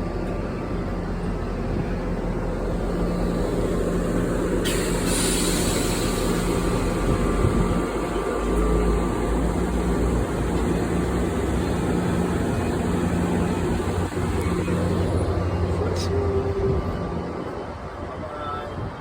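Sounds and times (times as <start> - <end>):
diesel locomotive engine drone: 0.0 - 19.0
short air hiss: 4.6 - 6.8.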